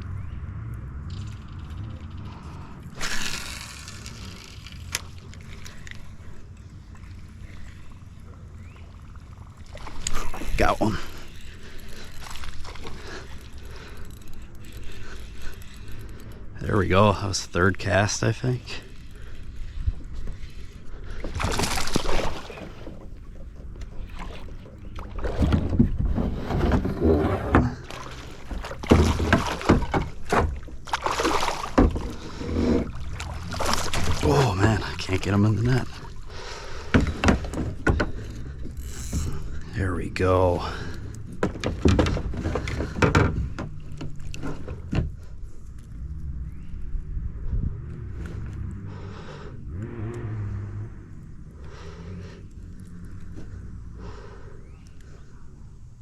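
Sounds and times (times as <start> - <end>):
river: 0.0 - 56.0
water sloshing and splashing: 1.1 - 46.5
knocking in a small boat: 22.7 - 32.2
wind rumble on microphone: 44.8 - 51.4.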